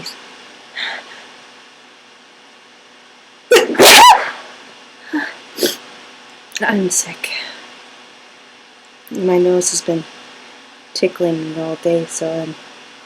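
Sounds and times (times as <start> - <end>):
woman sneezing: 3.5 - 4.5, 5.6 - 5.8.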